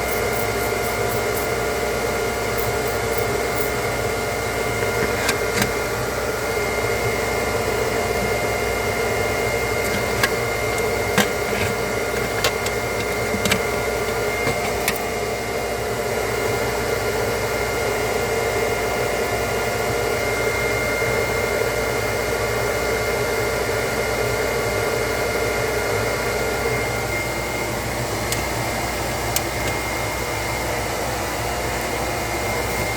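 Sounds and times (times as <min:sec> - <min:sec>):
thin high whine: 0:00.0 - 0:01.8.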